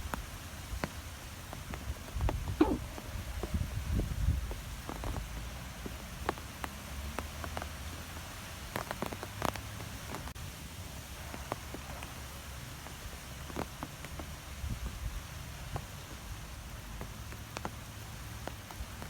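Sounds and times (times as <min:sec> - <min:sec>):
wind blowing through trees: 0:00.0 - 0:19.0.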